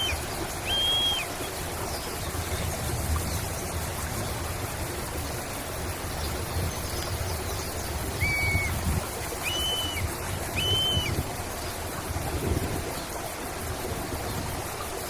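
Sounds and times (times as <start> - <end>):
bird whistling: 0.0 - 1.5, 8.2 - 8.8, 9.4 - 11.2
running water: 0.0 - 15.0.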